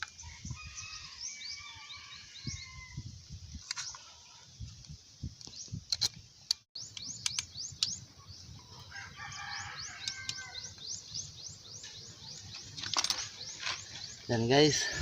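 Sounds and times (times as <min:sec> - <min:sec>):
rooster crowing: 0:00.2 - 0:03.0, 0:08.8 - 0:10.7
sharp clicks: 0:05.9 - 0:08.0
bird rising chirp: 0:06.8 - 0:14.9.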